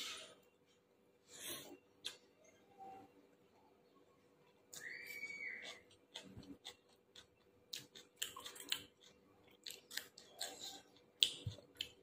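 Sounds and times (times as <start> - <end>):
chewing food: 4.4 - 12.0.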